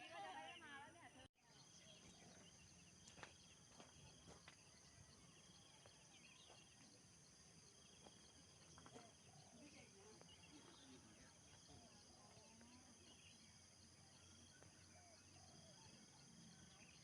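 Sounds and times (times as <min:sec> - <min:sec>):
insects chirring: 0:00.1 - 0:17.0.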